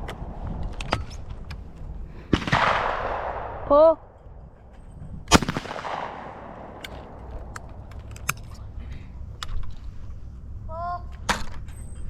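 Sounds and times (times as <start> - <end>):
shotgun shot with echo: 2.3 - 3.9, 5.3 - 7.5.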